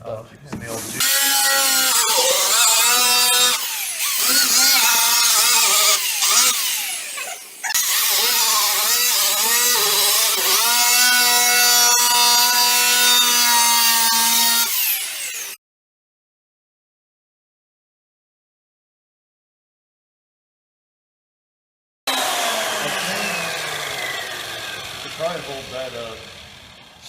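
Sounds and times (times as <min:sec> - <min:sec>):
power buffer running: 0:01.0 - 0:09.9, 0:22.1 - 0:27.0.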